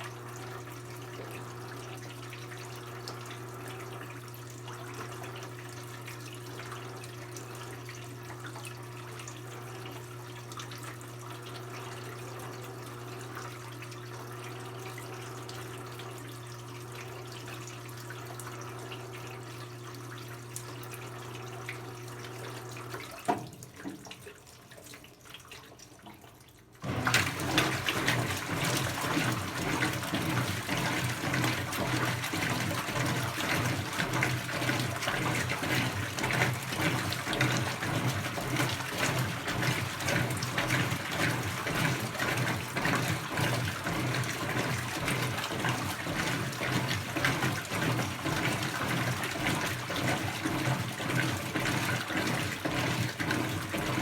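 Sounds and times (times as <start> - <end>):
washing machine hum: 0.0 - 54.0.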